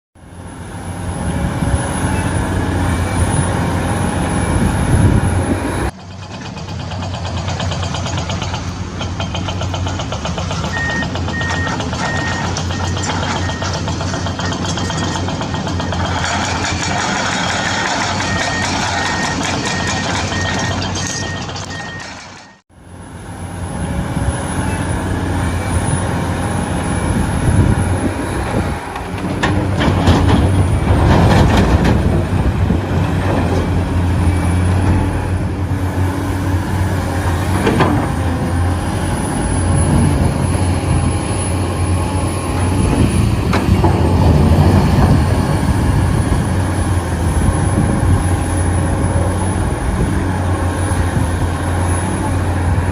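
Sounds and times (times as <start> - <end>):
engine-like hum: 0.2 - 52.9
reversing alarm beeps: 10.6 - 13.8, 18.2 - 22.6.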